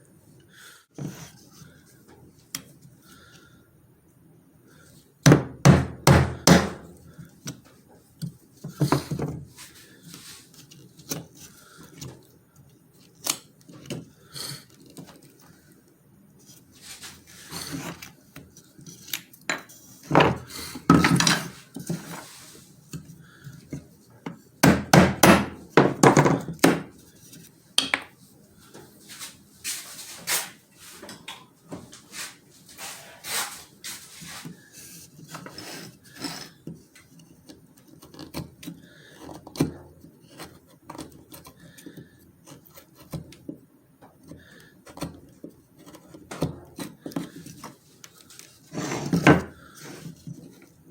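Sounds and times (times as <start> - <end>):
wooden taps and knocks: 24.3 - 26.9.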